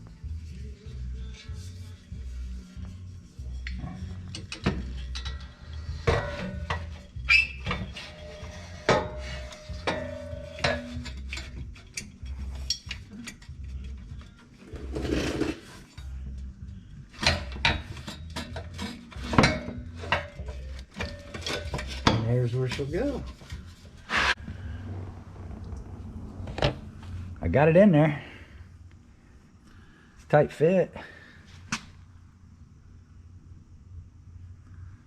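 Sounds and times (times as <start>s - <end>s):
background music with low beat: 0.0s - 24.6s
hand tools clinking on metal: 4.3s - 7.0s, 7.7s - 14.0s, 17.2s - 23.5s.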